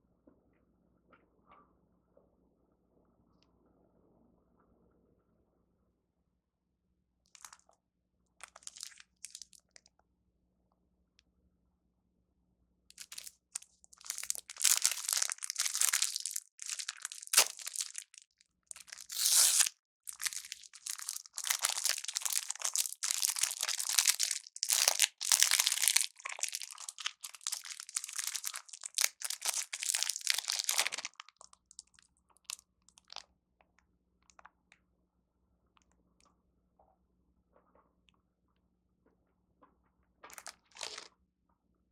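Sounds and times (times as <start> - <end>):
plastic wrapper crinkling and tearing: 7.4 - 7.7, 8.4 - 9.8, 12.9 - 33.2, 40.3 - 41.1.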